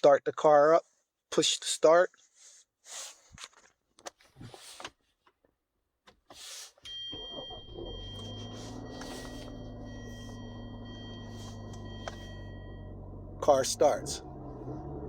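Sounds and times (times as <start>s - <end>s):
car engine starting and idling: 6.9s - 15.0s.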